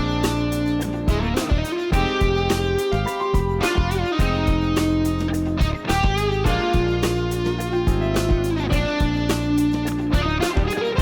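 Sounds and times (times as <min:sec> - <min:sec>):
upbeat guitar music: 0:00.0 - 0:11.0.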